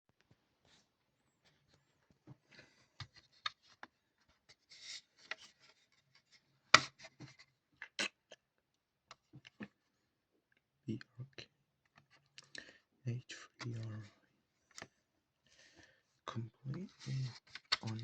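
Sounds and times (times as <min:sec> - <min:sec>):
scratchy rustle: 0:16.8 - 0:18.0.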